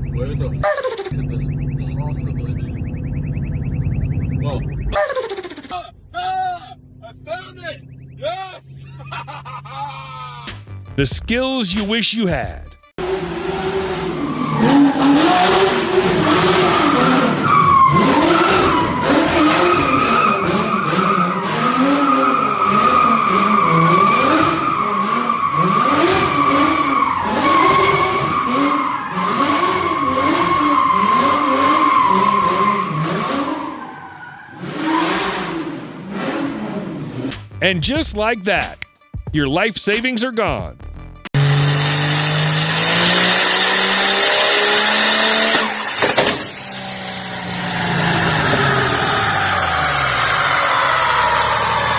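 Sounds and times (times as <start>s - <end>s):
car engine revving: 41.4s - 46.0s.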